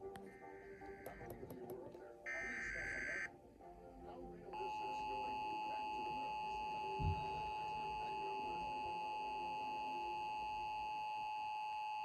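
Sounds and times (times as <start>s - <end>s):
emergency alert tone: 2.3s - 3.3s.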